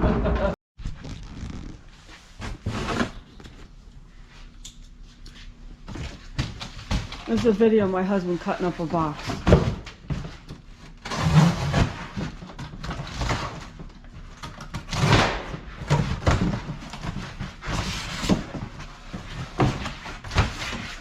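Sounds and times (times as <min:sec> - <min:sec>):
cardboard scraping and rustling: 0:00.8 - 0:03.6, 0:14.9 - 0:21.0.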